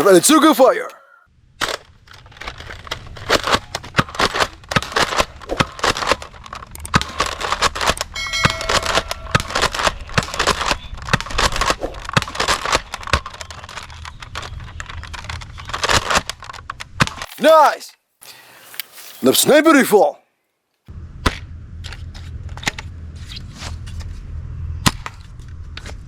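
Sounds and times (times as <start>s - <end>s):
sharp clicks and crackles: 1.6s - 8.2s, 9.0s - 17.4s
steady electronic tone: 8.2s - 10.1s.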